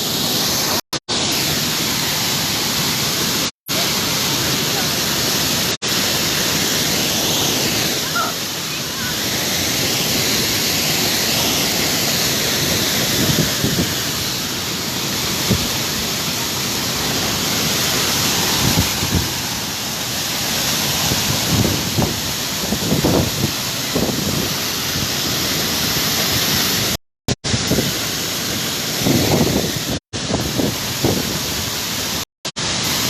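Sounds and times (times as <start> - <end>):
waterfall pouring down: 0.0 - 33.0.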